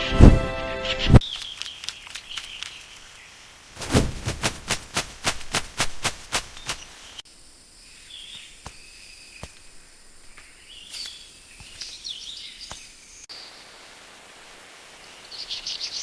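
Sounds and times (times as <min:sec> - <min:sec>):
bird chirps: 0:00.8 - 0:03.4, 0:06.5 - 0:07.2, 0:07.8 - 0:13.5
sharp clicks: 0:01.2 - 0:02.8.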